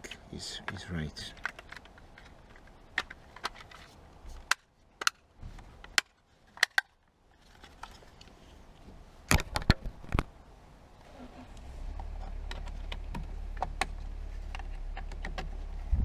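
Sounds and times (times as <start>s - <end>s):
small hard parts clicking: 0.5s - 8.3s.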